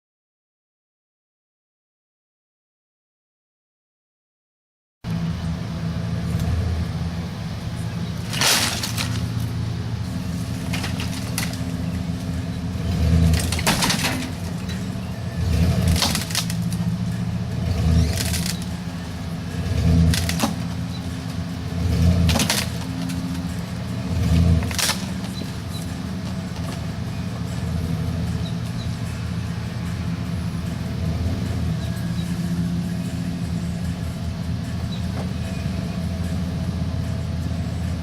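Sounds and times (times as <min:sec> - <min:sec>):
engine humming: 0:05.0 - 0:38.0.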